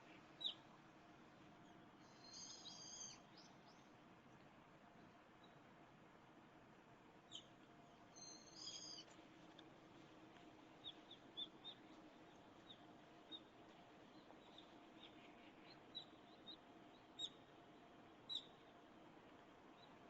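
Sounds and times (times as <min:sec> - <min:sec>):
faint high bird chirps: 0:00.4 - 0:00.6, 0:01.6 - 0:03.9, 0:07.3 - 0:09.2, 0:14.1 - 0:17.5, 0:18.2 - 0:18.7.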